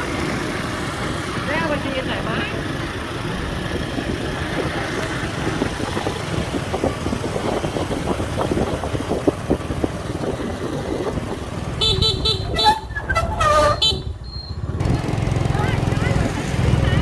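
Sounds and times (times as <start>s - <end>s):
motorbike engines: 0.0s - 17.0s
road traffic rumble: 0.0s - 17.0s.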